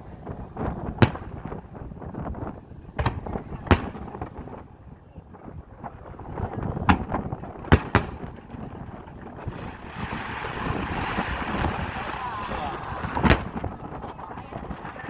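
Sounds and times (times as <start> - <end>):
fireworks shells bursting: 5.8 - 15.0
low rumble: 8.8 - 15.0
rising wash of noise: 9.1 - 15.0.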